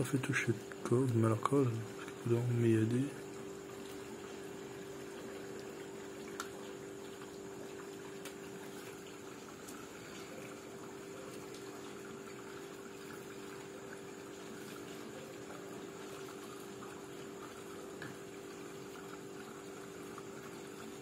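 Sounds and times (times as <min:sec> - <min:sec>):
even hiss: 0:00.0 - 0:06.7.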